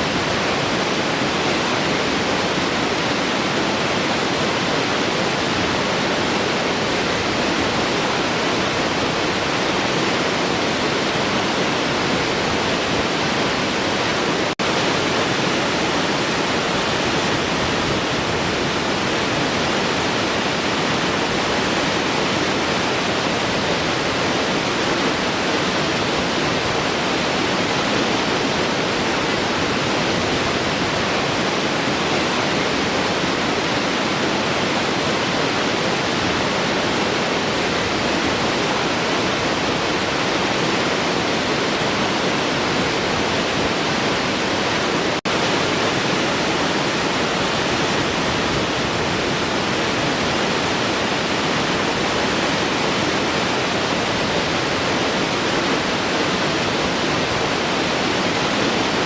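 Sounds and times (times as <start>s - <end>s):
waterfall roaring: 0.0s - 59.0s.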